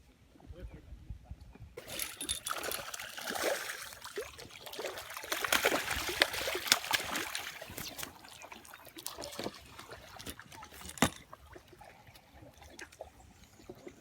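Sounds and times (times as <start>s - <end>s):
water drips: 1.8s - 14.0s
water splashing and trickling: 1.8s - 14.0s.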